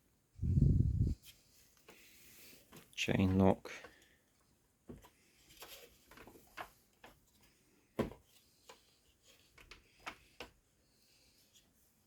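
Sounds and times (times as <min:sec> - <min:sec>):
plastic parts clicking and knocking: 0:02.6 - 0:10.7.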